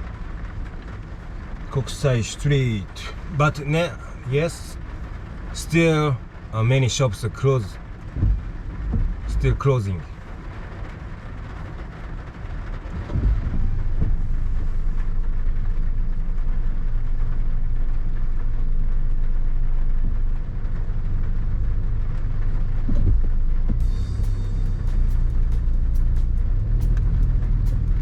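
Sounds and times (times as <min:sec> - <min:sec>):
car engine drone: 0:00.0 - 0:28.0
road noise inside car: 0:00.0 - 0:28.0.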